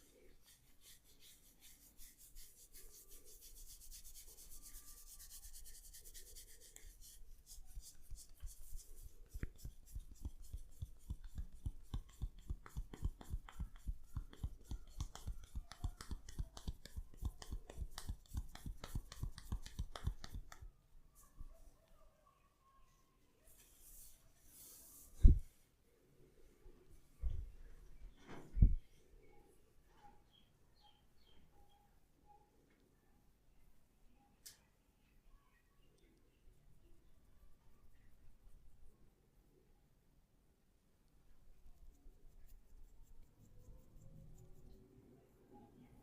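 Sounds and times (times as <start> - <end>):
hands rubbing through hair: 0.0 - 20.7, 23.5 - 25.4.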